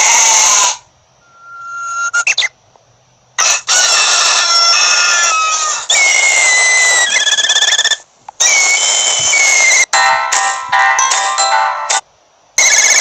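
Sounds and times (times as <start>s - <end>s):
rooster crowing: 3.4s - 6.6s.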